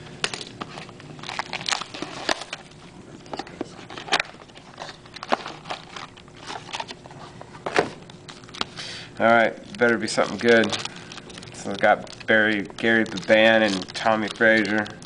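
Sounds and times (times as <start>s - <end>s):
packaging crinkling: 0.6s - 7.2s, 8.0s - 15.0s
cards clicking and flicking: 9.7s - 15.0s.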